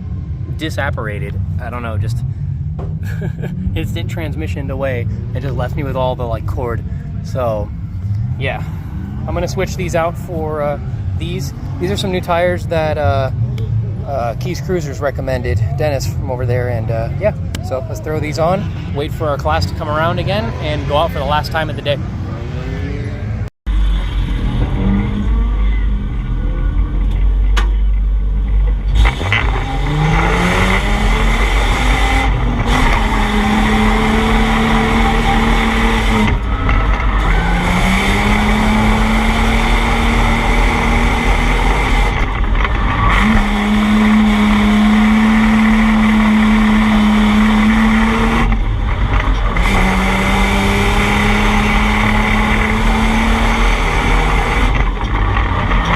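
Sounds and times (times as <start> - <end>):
car engine revving: 0.0 - 55.9.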